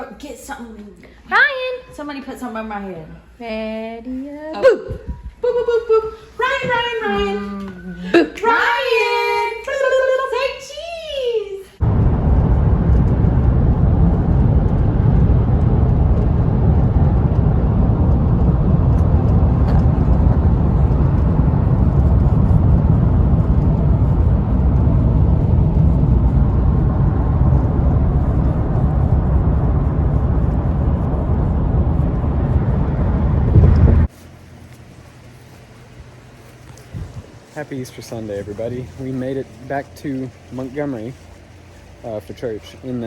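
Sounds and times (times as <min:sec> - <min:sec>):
road and wind noise inside car: 0:11.8 - 0:34.2, 0:36.7 - 0:43.0.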